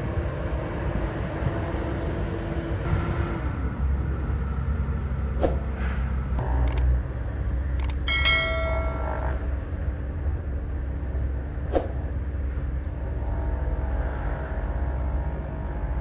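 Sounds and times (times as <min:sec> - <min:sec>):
diesel excavator running: 0:00.0 - 0:16.0
ringing metal clang: 0:08.1 - 0:09.4.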